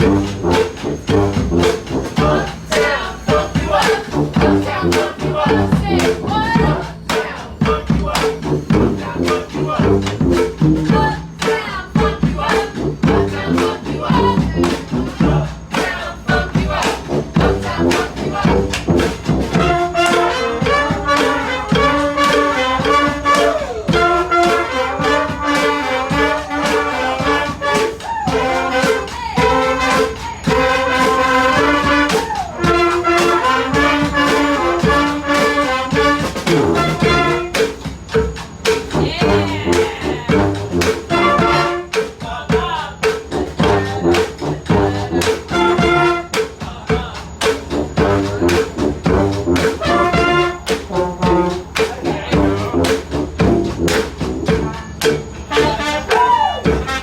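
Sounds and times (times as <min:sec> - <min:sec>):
brass band playing: 0:00.0 - 0:57.0
drum hits: 0:00.0 - 0:57.0
horns playing melody: 0:00.0 - 0:57.0.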